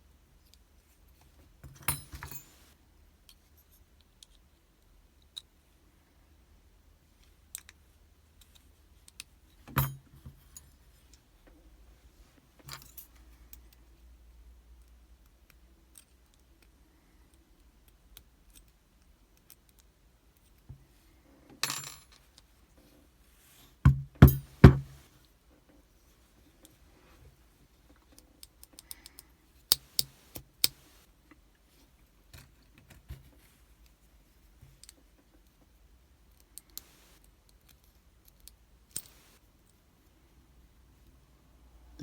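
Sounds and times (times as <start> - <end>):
sharp knocks on lock: 23.9 - 25.0.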